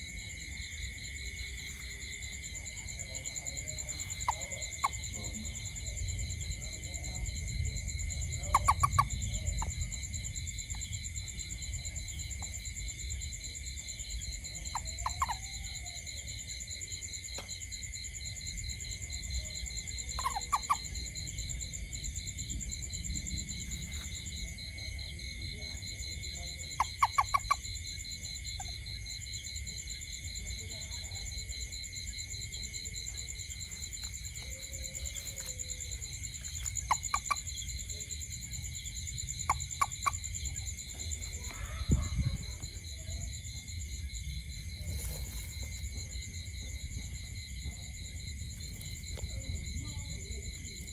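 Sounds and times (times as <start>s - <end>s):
night insects chorus: 0.0s - 50.9s
toad calling in quick pulses: 3.7s - 5.6s, 8.2s - 10.0s, 14.5s - 16.1s, 19.8s - 21.2s, 26.3s - 27.8s, 33.1s - 43.2s.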